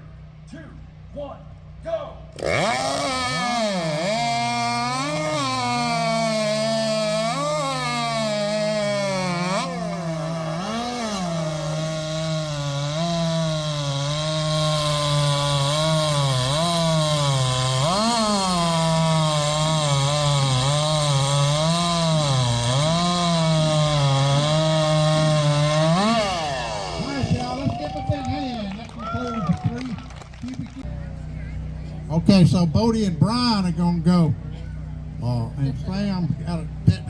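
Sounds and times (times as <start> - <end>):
chainsaw cutting through log: 2.4 - 30.6.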